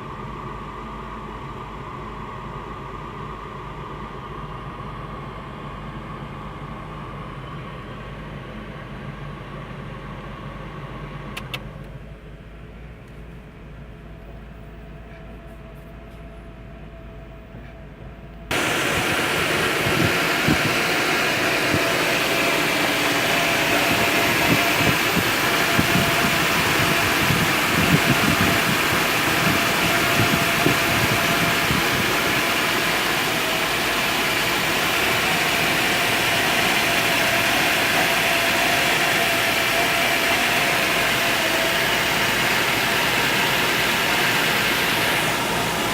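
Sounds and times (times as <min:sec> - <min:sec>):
car engine idling roughly: 0:18.5 - 0:45.9.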